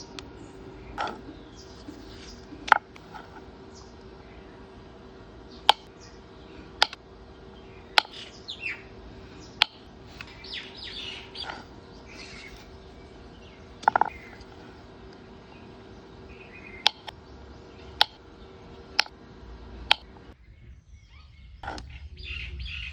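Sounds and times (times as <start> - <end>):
birds chirping: 0.0 - 22.9
sharp clicks: 5.6 - 5.9, 6.8 - 7.1, 7.9 - 8.3, 9.4 - 10.4, 16.7 - 17.2, 17.9 - 19.2, 19.8 - 20.2.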